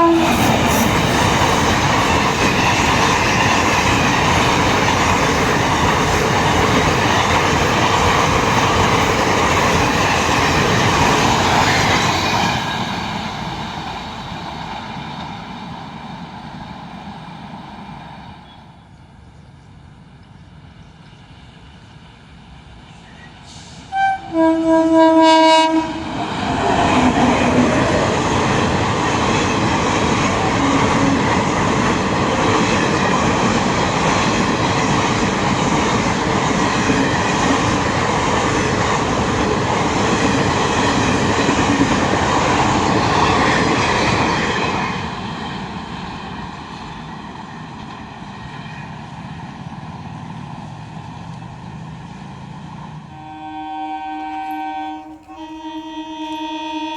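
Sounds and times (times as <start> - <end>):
train horn: 0.0 - 2.8, 23.9 - 26.2, 30.4 - 31.4, 53.1 - 56.9
passenger train rushing past: 0.0 - 56.9.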